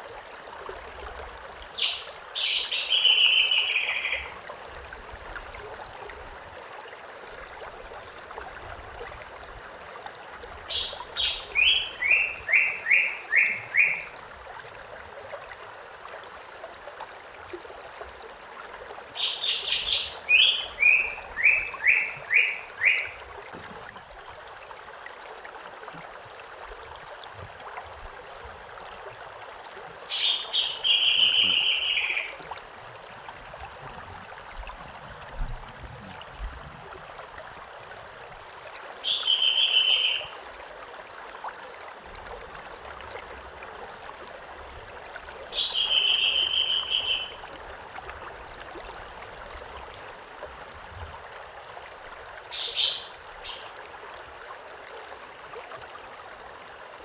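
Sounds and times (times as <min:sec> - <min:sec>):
stream rushing: 0:00.0 - 0:57.0
songbird singing: 0:01.8 - 0:04.3, 0:10.7 - 0:14.2, 0:19.2 - 0:23.2, 0:30.1 - 0:32.4, 0:39.0 - 0:40.4, 0:45.5 - 0:47.4, 0:52.5 - 0:53.9.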